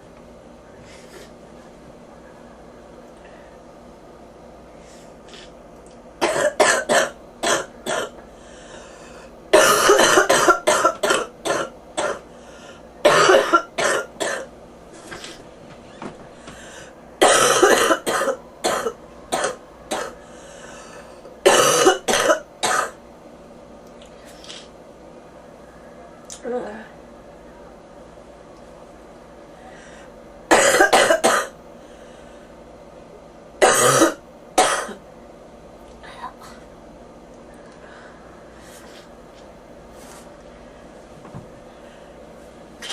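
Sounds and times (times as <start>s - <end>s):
person coughing in fits: 6.2s - 8.2s, 9.6s - 12.2s, 13.0s - 14.5s, 17.2s - 20.2s, 21.4s - 23.0s, 30.5s - 31.6s, 33.6s - 35.0s.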